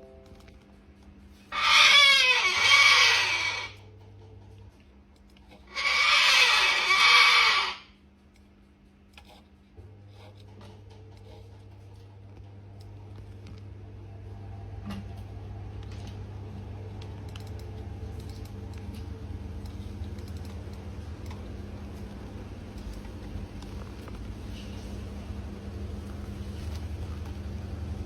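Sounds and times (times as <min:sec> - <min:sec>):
cockatoo screaming: 0:01.5 - 0:03.8, 0:05.6 - 0:08.0.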